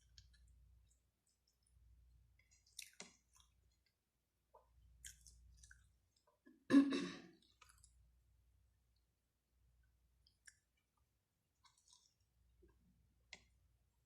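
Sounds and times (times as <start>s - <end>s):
wet chewing noises: 2.4s - 4.0s, 4.6s - 6.4s, 11.6s - 12.8s.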